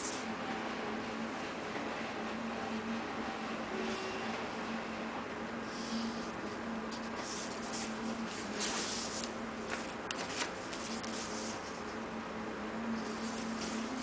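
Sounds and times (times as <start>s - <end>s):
paper packaging rustling: 7.0s - 12.0s.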